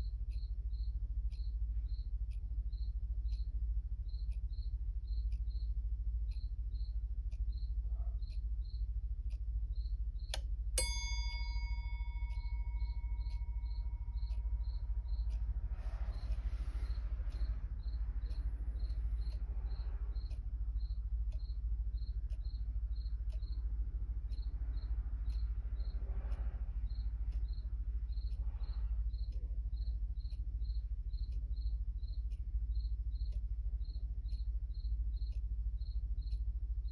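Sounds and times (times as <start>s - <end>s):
clock ticking: 0.0s - 36.9s
clock bell strike ringing: 10.8s - 15.0s.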